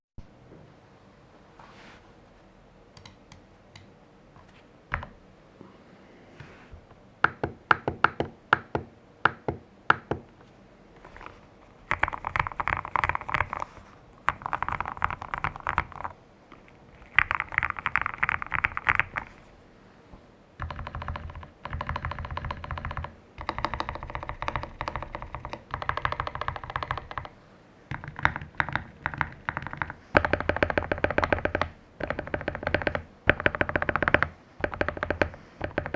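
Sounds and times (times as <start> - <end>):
mechanical keyboard typing: 11.1 - 19.5, 20.6 - 35.9.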